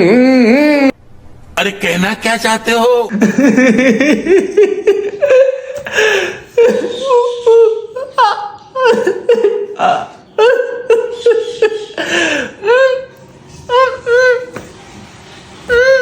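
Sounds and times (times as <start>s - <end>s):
child humming and grunting: 0.0s - 1.0s.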